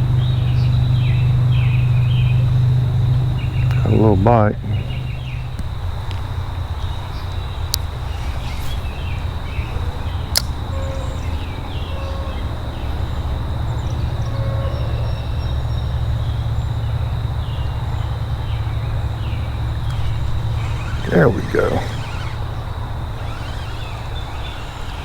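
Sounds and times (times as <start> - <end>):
sharp clicks: 10.3 - 10.6.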